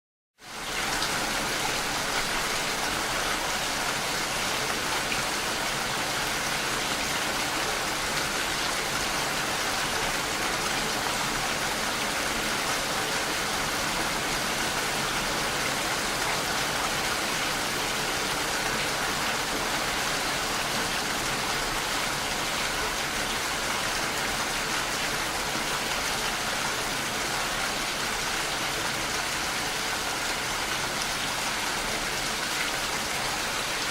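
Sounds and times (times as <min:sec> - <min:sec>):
steady rainfall: 0:00.4 - 0:33.9.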